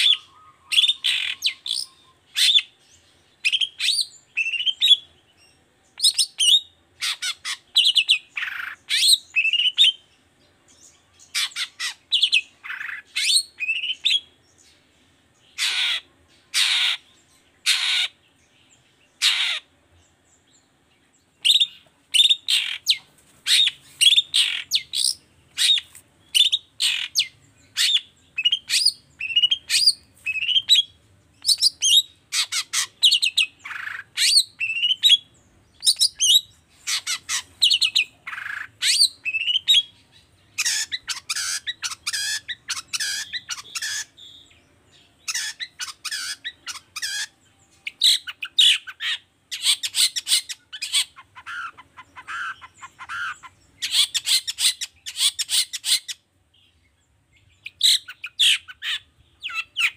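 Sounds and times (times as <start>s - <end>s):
bird chirping and whistling: 0.0s - 2.7s, 3.4s - 5.0s, 6.0s - 10.0s, 11.4s - 14.3s, 21.4s - 35.2s, 35.8s - 40.0s, 40.6s - 44.4s, 45.2s - 56.2s.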